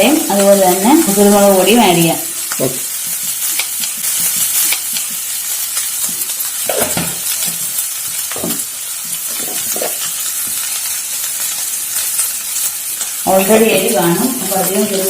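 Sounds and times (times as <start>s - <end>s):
food sizzling in oil: 0.0s - 15.0s.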